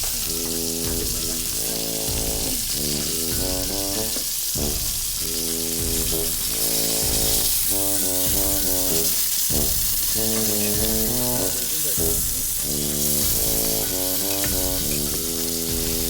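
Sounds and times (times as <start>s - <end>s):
background music with bass line: 0.0s - 16.0s
meat sizzling over fire: 0.0s - 16.0s.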